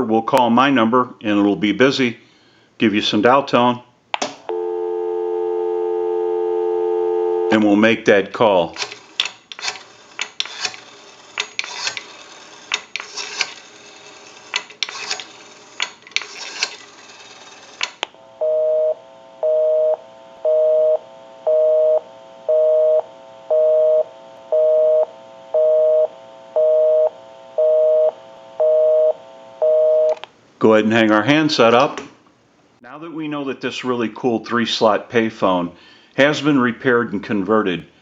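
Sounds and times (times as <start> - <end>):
telephone busy signal: 4.5 - 7.6, 18.4 - 30.2.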